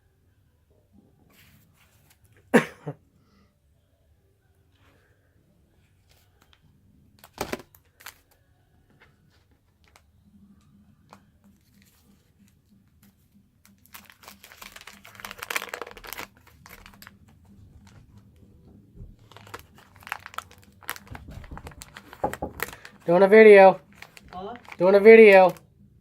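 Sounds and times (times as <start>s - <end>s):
wax paper wrapper tearing: 13.7s - 18.2s, 19.2s - 25.6s.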